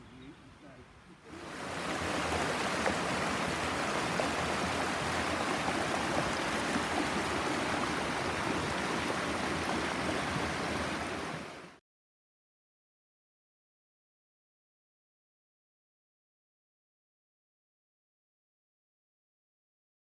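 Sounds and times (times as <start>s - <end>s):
forest stream rushing water: 1.2s - 11.8s.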